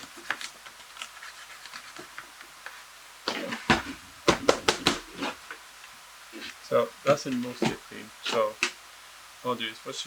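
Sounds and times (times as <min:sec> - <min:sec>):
dull thud: 0:03.3 - 0:05.2
plastic knocks and rattles: 0:03.3 - 0:05.2.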